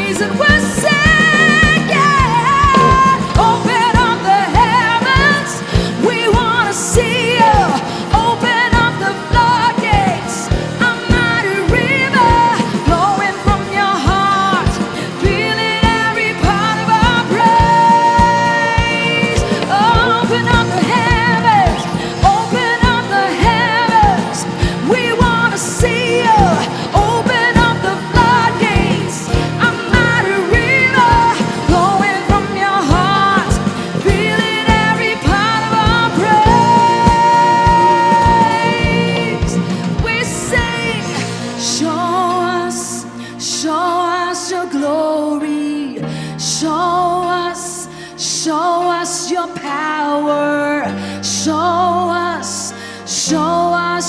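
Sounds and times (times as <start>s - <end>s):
steady drum beat: 0.0s - 42.3s
worship band playing: 0.0s - 45.4s
person singing: 0.0s - 54.0s.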